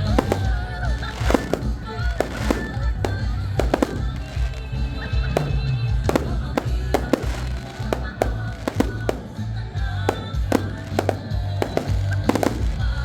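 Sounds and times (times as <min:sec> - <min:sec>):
fireworks bursting: 0:00.0 - 0:13.0
loud music with heavy bass: 0:00.0 - 0:13.0.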